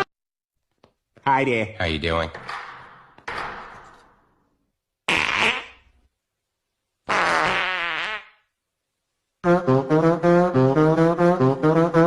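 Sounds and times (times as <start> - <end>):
fart sound effects: 5.1 - 6.0, 7.0 - 8.5.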